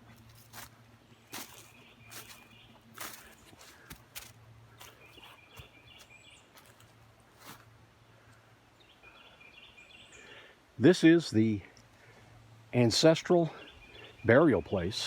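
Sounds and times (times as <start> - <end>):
footsteps on woodland floor: 0.0 - 7.7.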